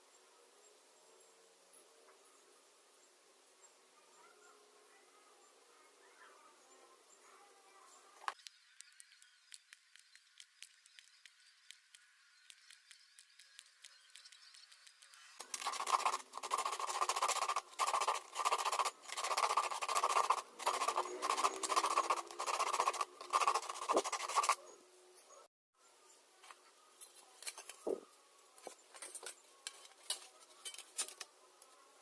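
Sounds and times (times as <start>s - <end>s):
hand tool scraping material: 15.3s - 24.6s.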